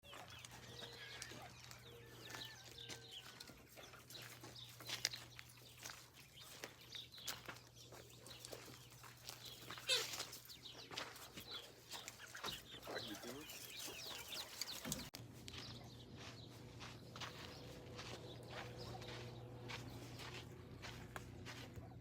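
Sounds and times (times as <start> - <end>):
chickens clucking: 0.0 - 22.0
steady low hum: 15.2 - 22.0.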